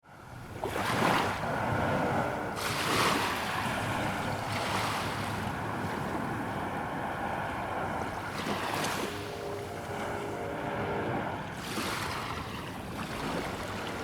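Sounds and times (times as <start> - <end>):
waves breaking on shore: 0.1 - 14.0.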